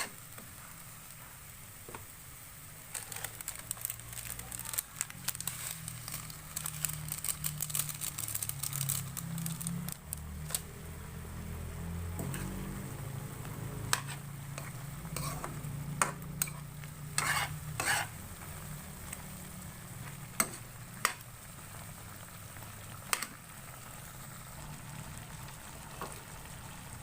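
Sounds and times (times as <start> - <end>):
spoon scraping a pan: 12.2 - 12.8, 13.8 - 18.2, 20.3 - 21.2.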